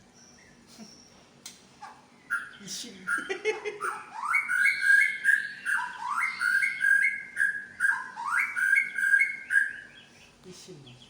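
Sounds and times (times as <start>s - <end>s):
bird singing whistled phrase: 4.2s - 10.0s.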